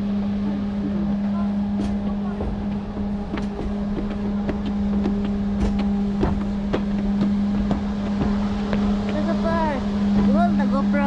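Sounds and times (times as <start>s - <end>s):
low mechanical hum: 0.0s - 11.0s.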